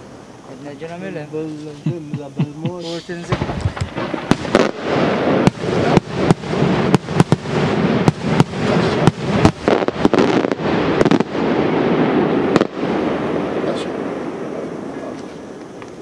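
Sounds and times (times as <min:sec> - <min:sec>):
fireworks bangs: 0:00.0 - 0:16.0
fireworks crackle: 0:00.0 - 0:16.0.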